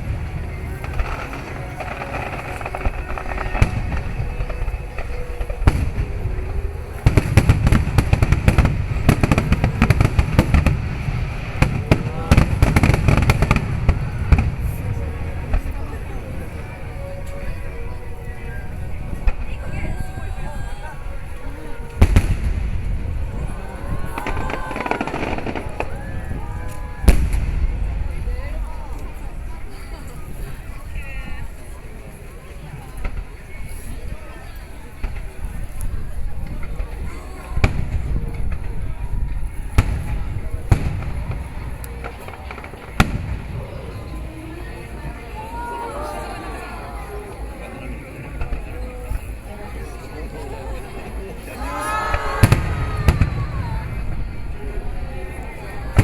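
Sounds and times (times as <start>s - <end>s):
rapid firework bangs and crackles: 0.0s - 17.3s, 21.9s - 30.8s, 34.8s - 45.2s, 52.1s - 56.0s
fireworks booming: 0.0s - 17.9s, 21.7s - 29.8s, 36.1s - 45.3s, 52.1s - 56.0s.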